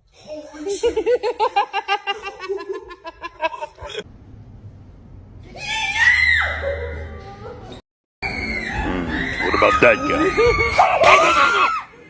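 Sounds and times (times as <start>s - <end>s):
person laughing hard: 0.7s - 4.0s.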